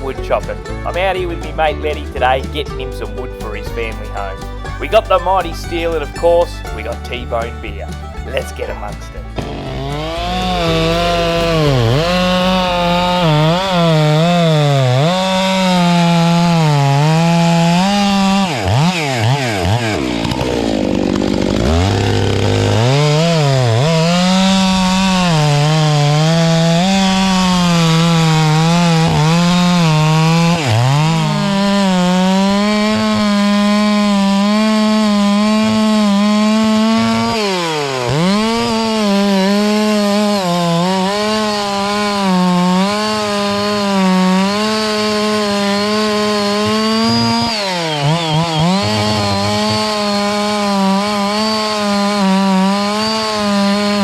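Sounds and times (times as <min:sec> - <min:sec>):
chainsaw cutting logs: 0:00.0 - 0:54.0.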